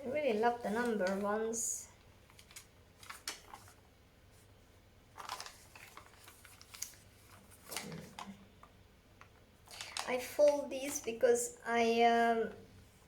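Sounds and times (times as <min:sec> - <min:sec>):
paper pages rustling: 0:00.2 - 0:01.6, 0:02.2 - 0:04.5, 0:05.1 - 0:11.2.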